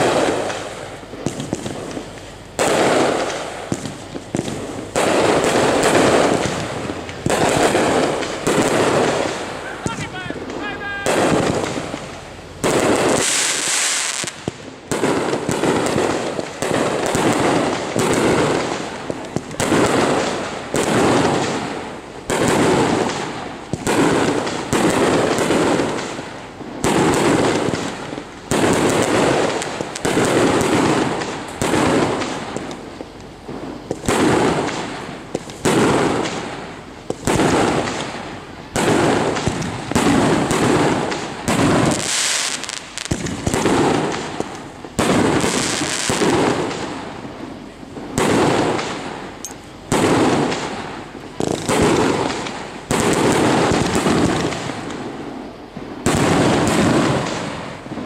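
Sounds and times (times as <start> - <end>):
fireworks bangs: 0.0 - 58.0.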